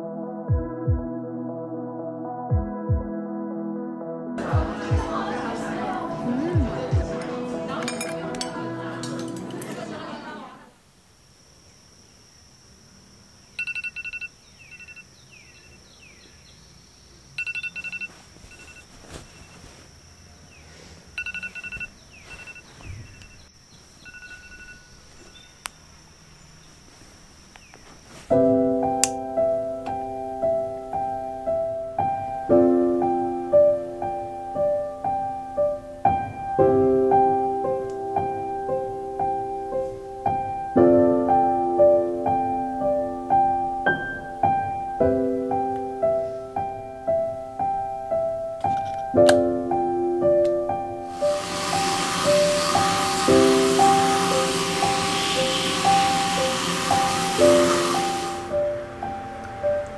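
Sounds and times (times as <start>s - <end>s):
piano music: 0.0s - 10.4s, 28.3s - 59.9s
faint high whine: 9.9s - 48.9s, 49.8s - 59.9s
electronic beeps: 13.5s - 15.8s, 17.4s - 19.6s, 21.2s - 25.9s.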